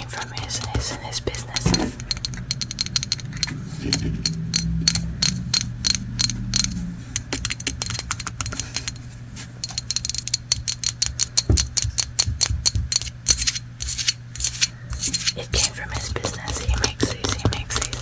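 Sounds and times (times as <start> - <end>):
ratchet-like clicking: 1.4 - 9.0, 9.6 - 15.4.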